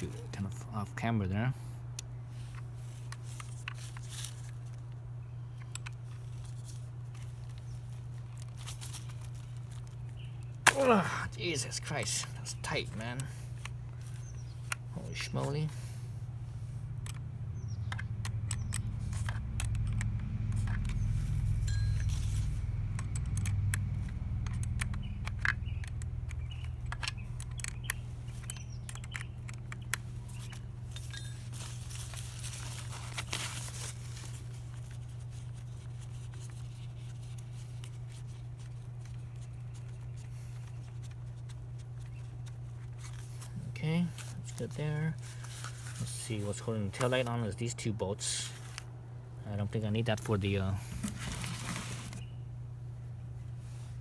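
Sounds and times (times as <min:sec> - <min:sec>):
steady low hum: 0:00.0 - 0:54.0
wrench and metal parts clinking: 0:17.9 - 0:32.2.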